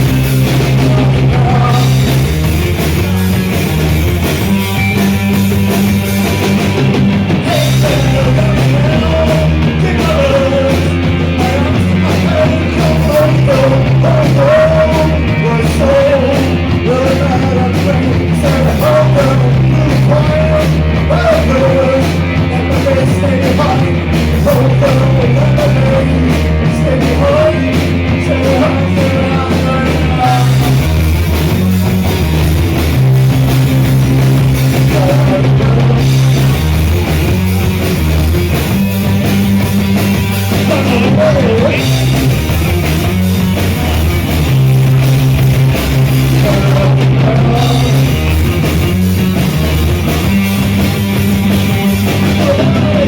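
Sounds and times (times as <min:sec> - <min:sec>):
bass line: 0:00.0 - 0:53.0
live rock band playing: 0:00.0 - 0:53.0
person singing: 0:00.6 - 0:02.2, 0:07.4 - 0:30.8, 0:34.6 - 0:36.7, 0:40.5 - 0:42.2, 0:46.0 - 0:48.3, 0:52.1 - 0:53.0.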